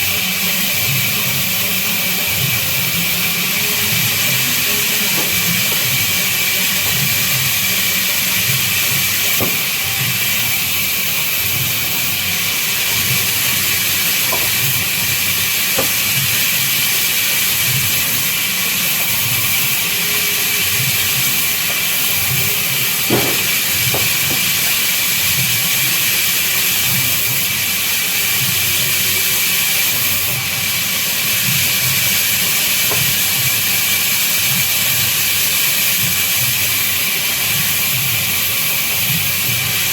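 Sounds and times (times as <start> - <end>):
band saw cutting wood: 2.1 - 28.2.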